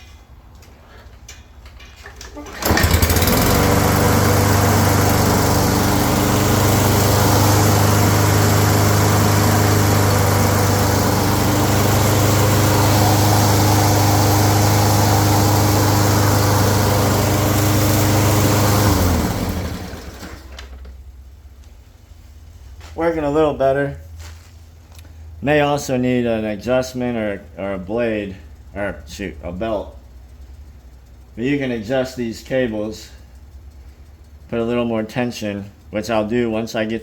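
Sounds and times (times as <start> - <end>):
lawn mower engine running: 0.5 - 21.2, 28.5 - 36.8.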